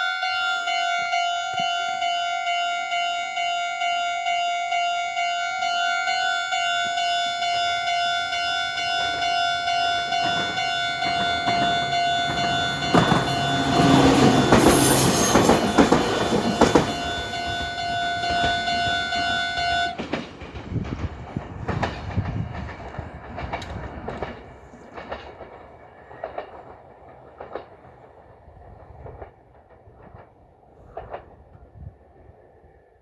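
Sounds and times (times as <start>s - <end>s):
train wheels clacking on rails: 6.0s - 31.8s.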